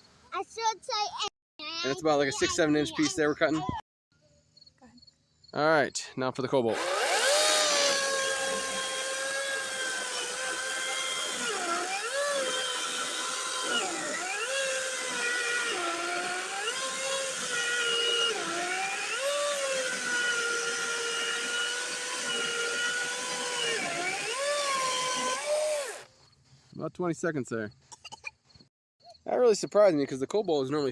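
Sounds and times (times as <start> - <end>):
electric chainsaw cutting log: 6.7 - 26.1.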